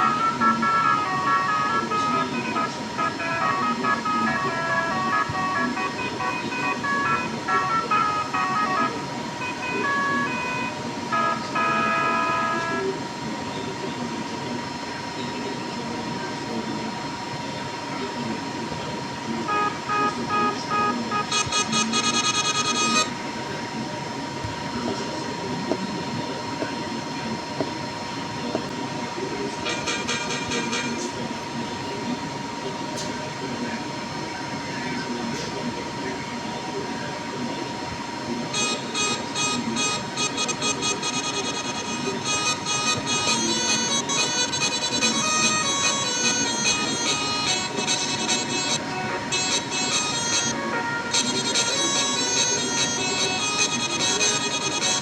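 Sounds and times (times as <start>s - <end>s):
multi-tone air horn tune: 0.0s - 13.2s, 19.2s - 23.7s, 29.5s - 31.2s, 38.2s - 55.0s.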